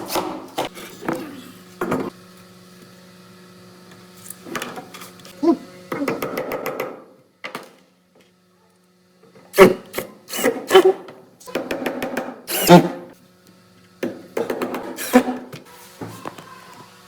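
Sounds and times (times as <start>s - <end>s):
rasping strokes on wood: 12.5s - 13.0s.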